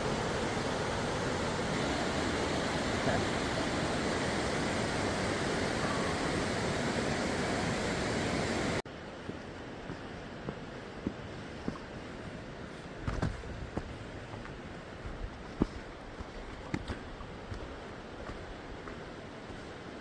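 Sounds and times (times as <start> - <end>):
creek water rushing over rocks: 0.0 - 8.9.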